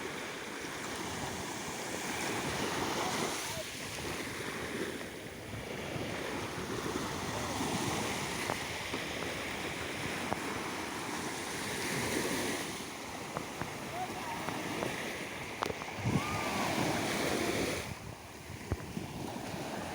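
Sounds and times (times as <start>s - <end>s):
low waves washing in: 0.0s - 19.9s
wind buffeting microphone: 1.0s - 19.9s.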